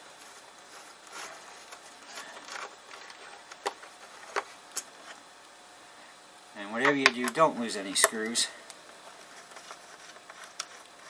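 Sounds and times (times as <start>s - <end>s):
screwdriver clicking and scraping: 9.3s - 11.0s.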